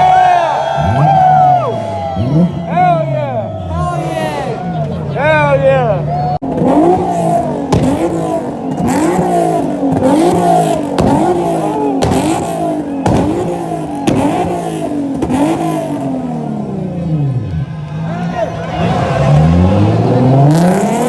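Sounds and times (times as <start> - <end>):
car engine revving: 0.0 - 21.0.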